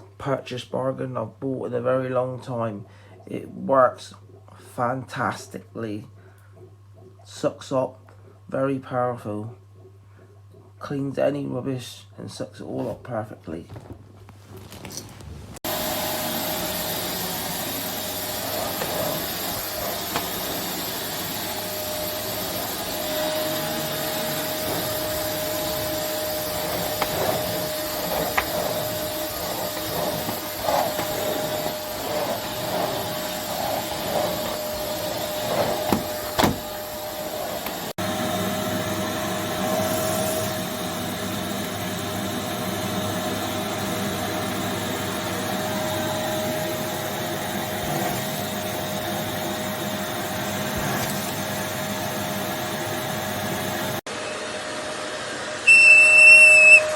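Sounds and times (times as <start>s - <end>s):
vacuum cleaner whining: 15.5s - 56.9s.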